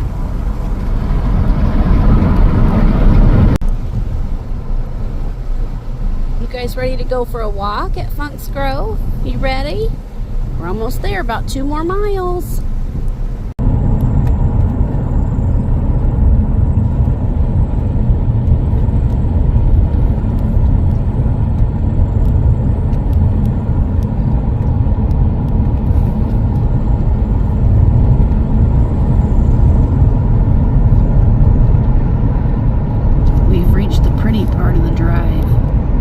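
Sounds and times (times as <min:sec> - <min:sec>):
car tyre and engine rumble: 0:00.0 - 0:36.0.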